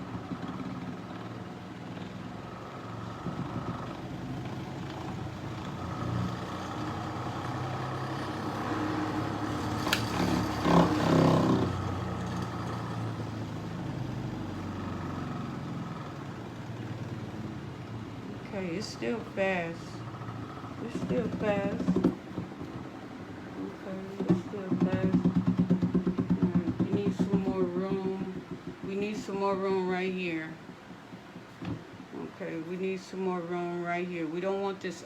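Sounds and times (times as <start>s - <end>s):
grinder motor humming: 0.0s - 13.6s.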